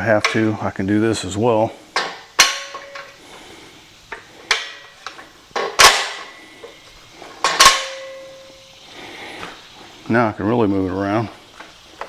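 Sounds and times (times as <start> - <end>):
metal frame clanks and knocks: 2.0 - 3.2, 5.5 - 6.4, 7.2 - 8.6
short metallic ring: 7.5 - 8.7.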